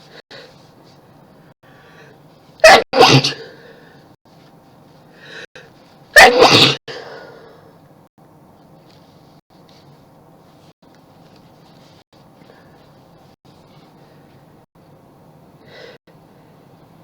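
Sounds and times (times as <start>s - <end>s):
woman sneezing: 2.6s - 3.6s, 6.2s - 7.1s.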